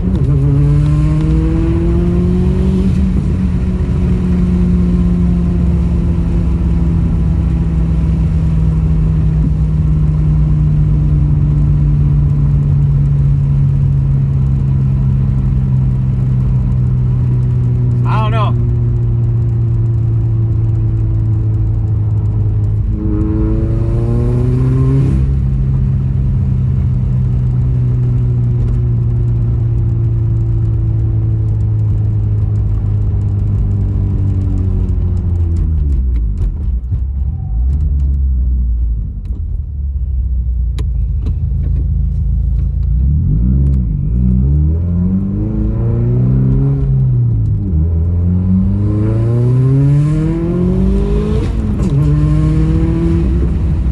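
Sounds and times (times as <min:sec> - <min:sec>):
car engine revving hard: 0:00.0 - 0:09.2, 0:22.7 - 0:26.3, 0:47.8 - 0:53.9.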